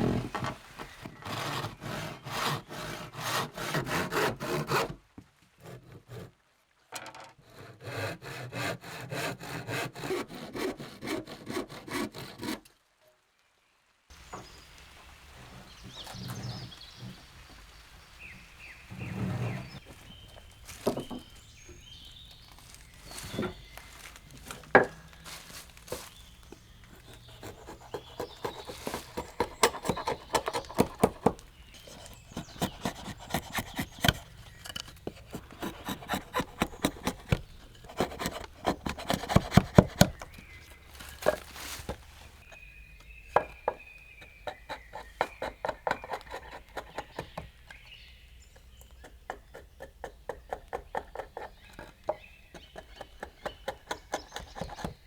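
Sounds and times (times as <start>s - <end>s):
wooden knocks and scrapes: 0.0s - 2.6s, 6.9s - 7.4s, 14.2s - 42.6s.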